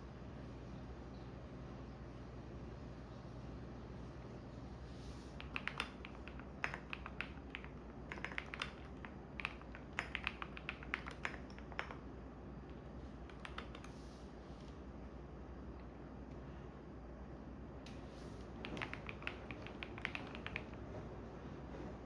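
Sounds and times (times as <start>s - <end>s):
washing machine humming: 0.0s - 22.0s
computer keyboard typing: 5.3s - 14.0s, 17.9s - 20.9s.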